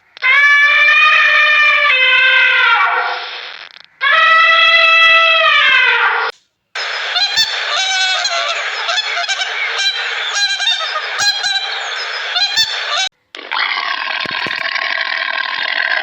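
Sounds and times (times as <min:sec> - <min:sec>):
geese honking: 0:04.0 - 0:13.1.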